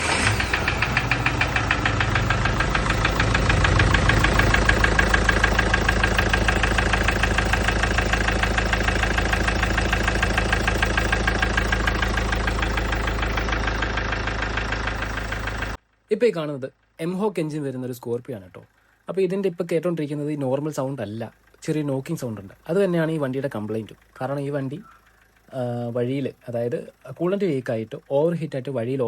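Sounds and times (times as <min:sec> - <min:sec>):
fast knocking inside engine: 0:00.0 - 0:15.8
diesel engine idling: 0:00.0 - 0:16.1, 0:20.2 - 0:29.0.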